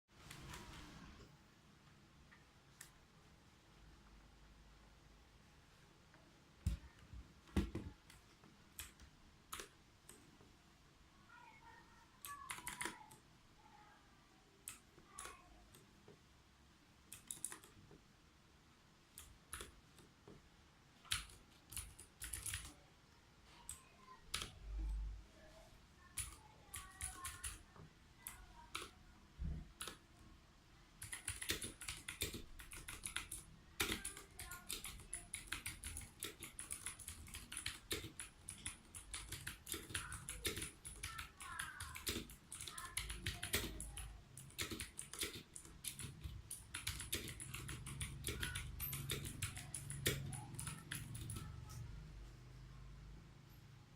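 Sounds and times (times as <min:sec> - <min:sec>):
clicky mechanical keyboard typing: 0:06.6 - 0:10.2, 0:12.2 - 0:13.2, 0:14.6 - 0:15.9, 0:17.1 - 0:18.0, 0:19.1 - 0:20.2, 0:21.0 - 0:22.8, 0:23.7 - 0:25.0, 0:26.0 - 0:29.0, 0:29.6 - 0:30.1, 0:31.0 - 0:51.9.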